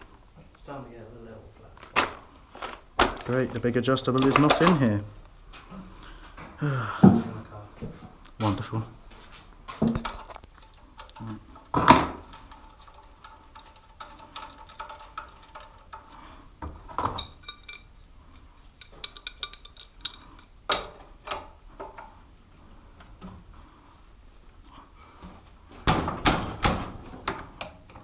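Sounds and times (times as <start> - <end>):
metal hand tools clinking: 10.1 - 16.3, 17.0 - 20.9.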